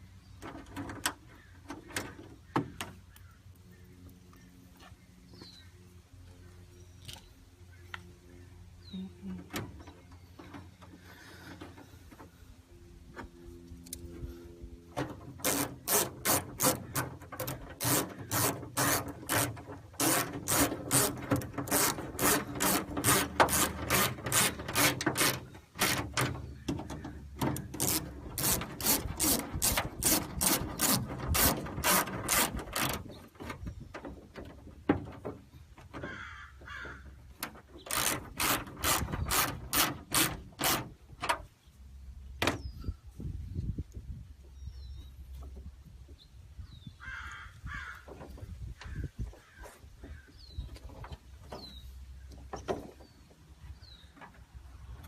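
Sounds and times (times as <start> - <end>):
hand ratchet clicking: 15.4 - 26.3, 27.6 - 33.1, 37.9 - 40.9.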